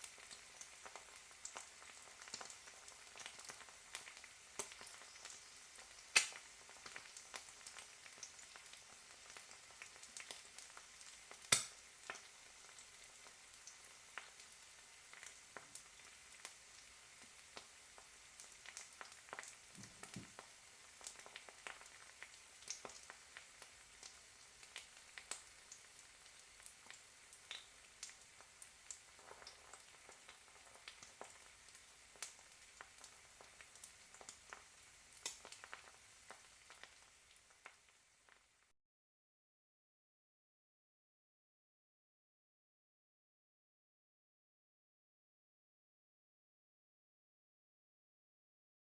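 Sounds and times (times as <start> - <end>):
egg sizzling in a pan: 0.0 - 38.7.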